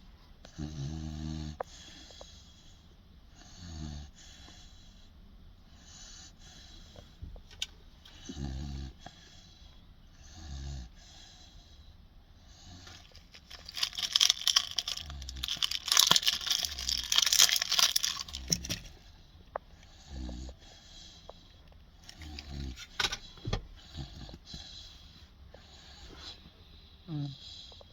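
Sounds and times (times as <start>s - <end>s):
puppy snoring: 0.4s - 5.1s, 5.7s - 7.2s, 8.0s - 27.9s
jangling scraping rattle: 12.9s - 19.0s.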